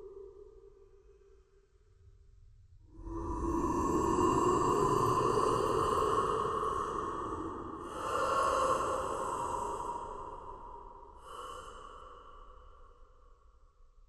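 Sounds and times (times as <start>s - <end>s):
breathy alligator hisses: 4.4s - 12.5s.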